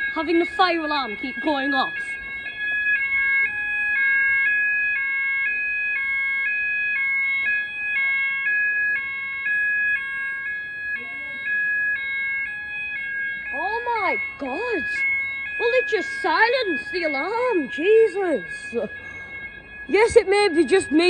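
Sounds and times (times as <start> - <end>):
fire alarm two-tone warble: 0.0 - 21.0.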